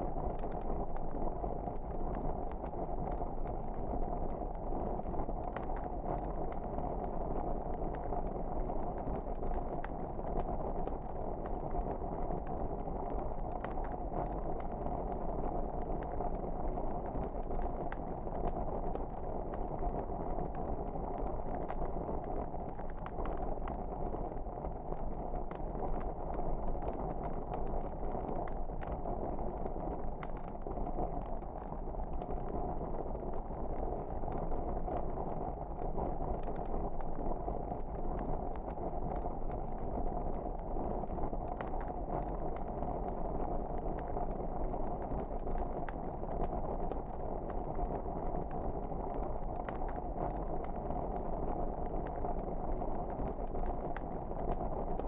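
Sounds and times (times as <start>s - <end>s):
crackles and pops of fire: 0.0s - 55.0s
wood fire burning: 0.0s - 55.0s.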